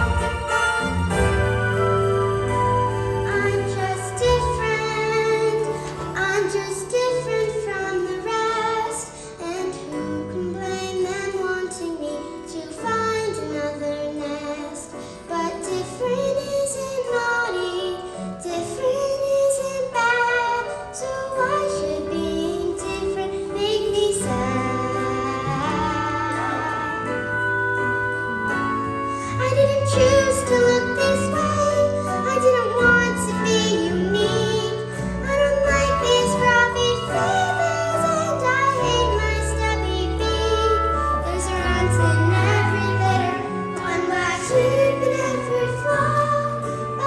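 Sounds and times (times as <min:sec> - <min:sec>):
instrumental accompaniment: 0:00.0 - 0:47.0
children singing: 0:21.0 - 0:27.3.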